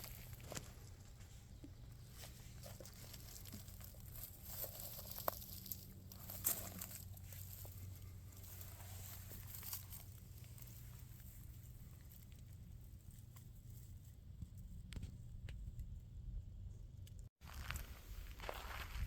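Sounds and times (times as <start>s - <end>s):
faint footsteps crunching: 0.0s - 12.2s, 17.4s - 19.0s
low steady hum: 0.0s - 17.3s.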